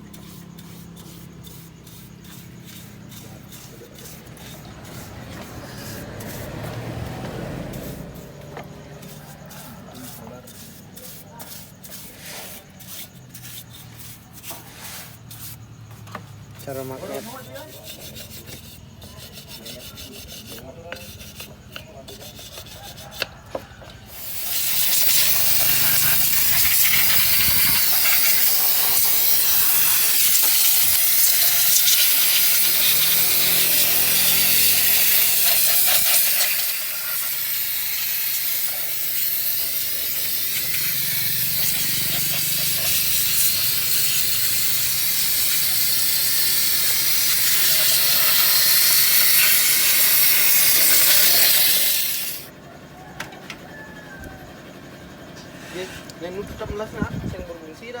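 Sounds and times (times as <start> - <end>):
pressurized jet hissing: 24.2 - 52.5.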